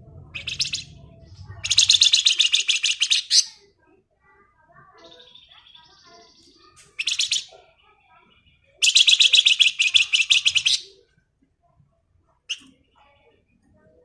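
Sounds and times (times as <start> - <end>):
songbird rattling song: 0.3 - 3.7, 5.0 - 11.0.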